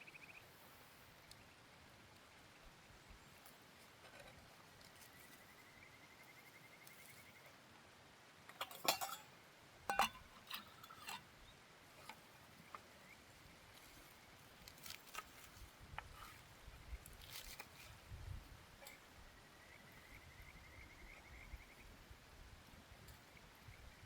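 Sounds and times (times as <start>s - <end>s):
cookware clinking: 8.6s - 9.3s, 9.9s - 11.2s.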